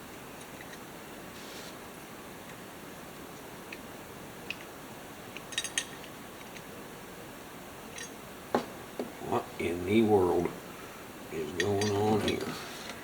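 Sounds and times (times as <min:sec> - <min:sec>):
steady low hiss: 0:00.0 - 0:13.0
tools and metal parts clicking: 0:05.3 - 0:06.7, 0:07.9 - 0:08.2, 0:11.5 - 0:12.6.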